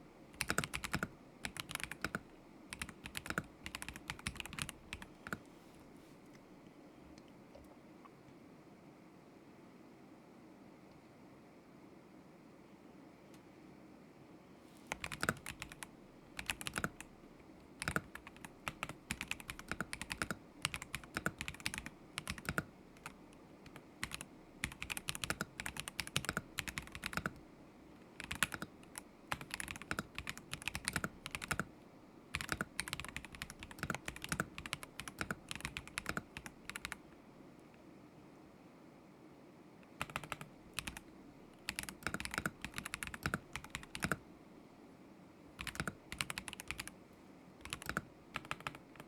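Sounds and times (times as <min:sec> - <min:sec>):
mechanical keyboard typing: 0:00.4 - 0:05.4, 0:14.9 - 0:17.1, 0:17.8 - 0:27.4, 0:28.2 - 0:31.7, 0:32.3 - 0:37.0, 0:40.0 - 0:41.0, 0:41.6 - 0:44.2, 0:45.6 - 0:46.9, 0:47.6 - 0:49.0.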